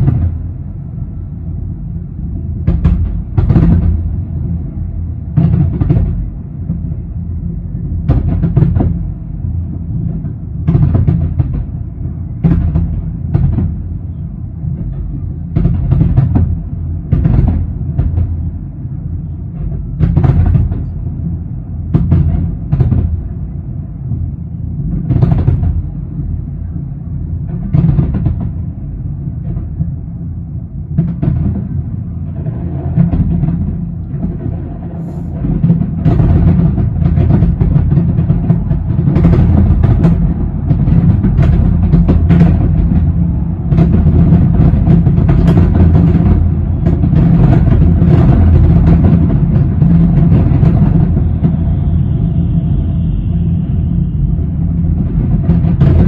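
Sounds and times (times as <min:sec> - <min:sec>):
fireworks booming and cracking: 0:00.0 - 0:00.8, 0:02.5 - 0:26.6, 0:27.4 - 0:30.0, 0:30.9 - 0:56.0
continuous low rumble: 0:00.0 - 0:56.0
fireworks crackling: 0:32.4 - 0:52.8.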